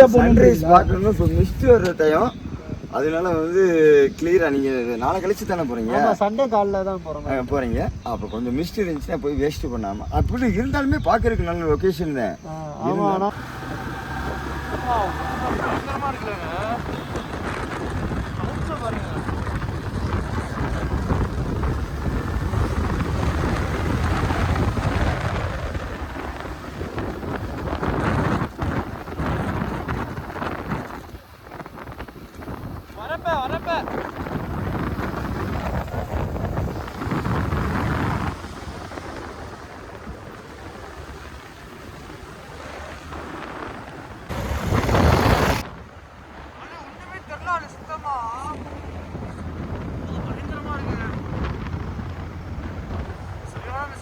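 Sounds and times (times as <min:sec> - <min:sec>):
wind buffeting microphone: 0:00.0 - 0:54.0
motorcycle rumble: 0:13.3 - 0:46.6, 0:47.7 - 0:54.0.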